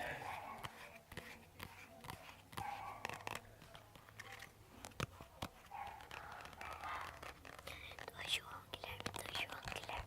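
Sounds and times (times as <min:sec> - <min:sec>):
person whispering: 0:07.6 - 0:10.0.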